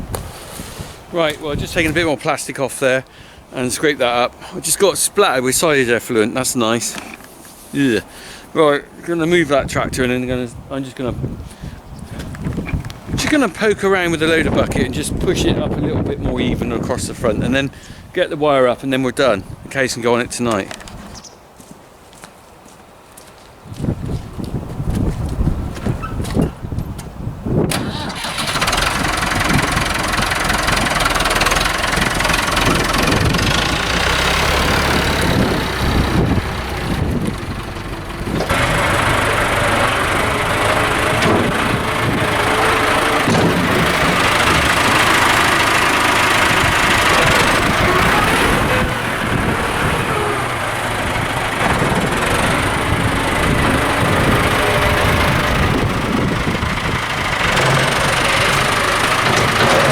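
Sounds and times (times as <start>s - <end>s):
tractor diesel engine running: 27.7s - 59.9s.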